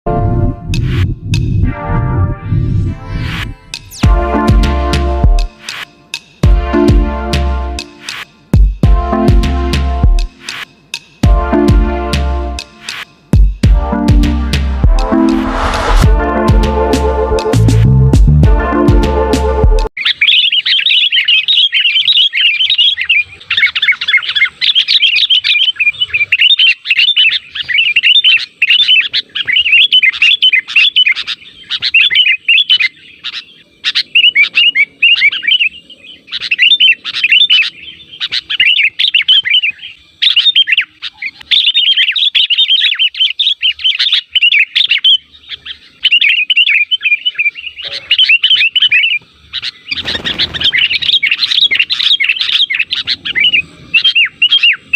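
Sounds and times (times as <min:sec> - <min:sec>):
bird chirping song: 0:19.9 - 0:54.9.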